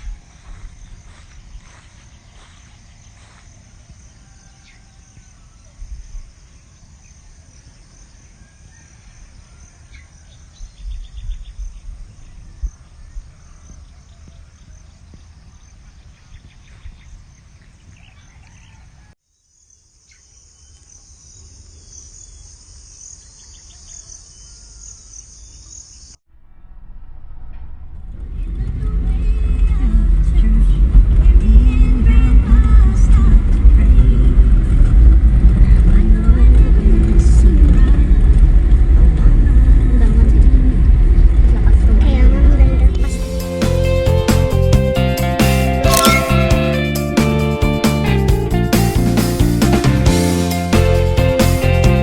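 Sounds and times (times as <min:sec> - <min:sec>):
low rumble: 0:00.0 - 0:03.6, 0:26.2 - 0:43.4
crickets chirping: 0:00.0 - 0:17.9, 0:19.2 - 0:26.2.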